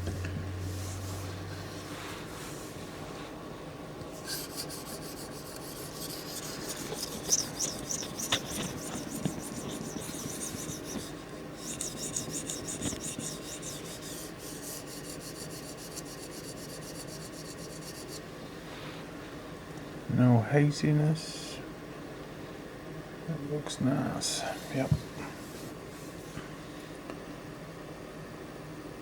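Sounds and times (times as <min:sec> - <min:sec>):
blade scraping on whetstone: 0:04.3 - 0:18.2.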